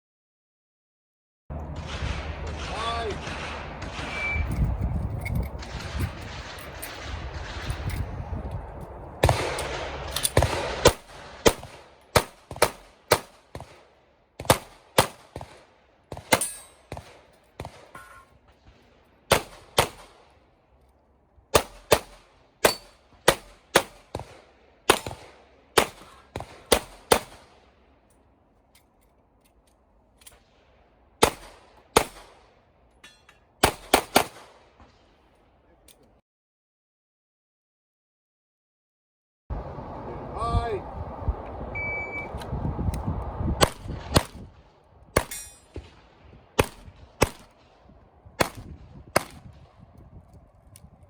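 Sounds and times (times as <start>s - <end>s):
pistol shots: 1.7s - 4.6s, 9.2s - 20.4s, 21.5s - 27.8s, 31.2s - 32.6s, 33.6s - 35.2s, 43.6s - 44.5s, 45.2s - 49.7s.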